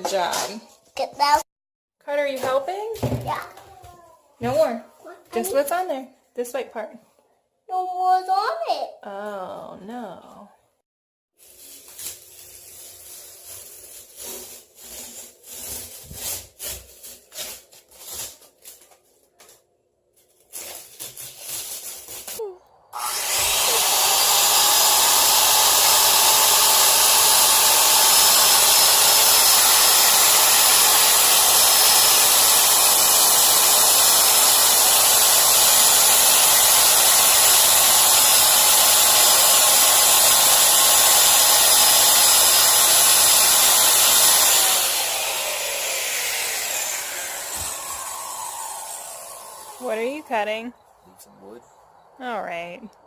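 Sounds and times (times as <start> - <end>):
power tool motor whirring: 23.0 - 50.1.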